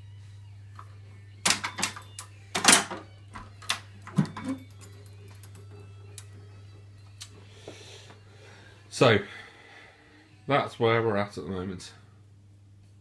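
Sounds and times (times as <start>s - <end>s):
hard objects knocking and clattering: 2.6s - 4.8s.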